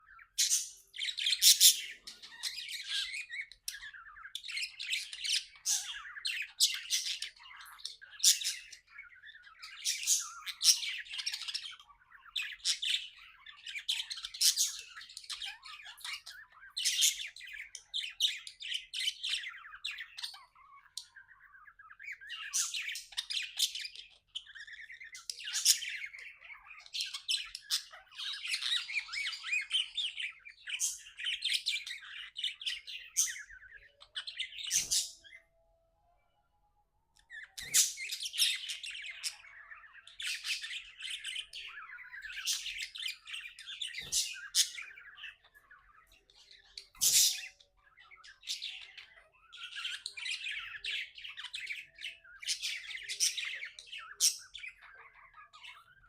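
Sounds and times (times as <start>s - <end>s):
budgerigar chirping: 0.1s - 17.3s, 46.6s - 56.0s.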